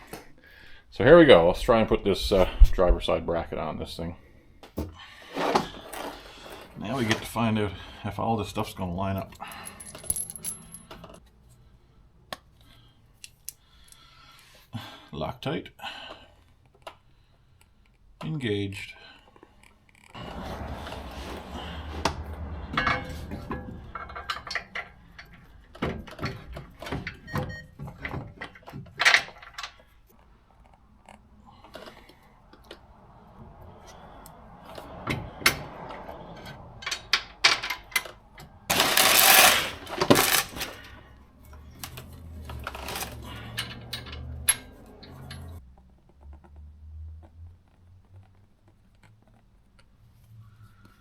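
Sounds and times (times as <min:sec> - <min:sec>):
metal bolts and nuts clinking: 0:09.4 - 0:11.2, 0:22.7 - 0:27.2, 0:36.4 - 0:40.9, 0:41.9 - 0:45.6.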